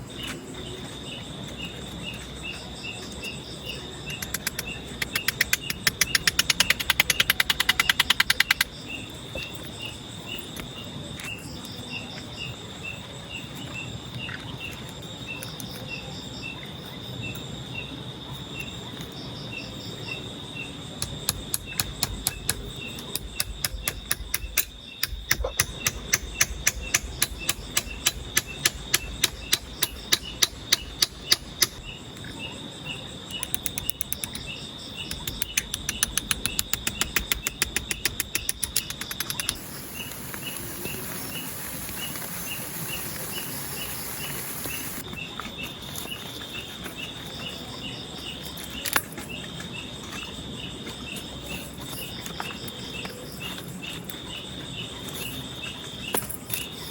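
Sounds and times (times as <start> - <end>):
insect chirps: 0.0 - 56.9
insect trill: 0.0 - 56.9
fast regular clicks: 4.1 - 8.7, 21.0 - 31.8, 35.1 - 40.8
high buzzing hiss: 39.4 - 45.0.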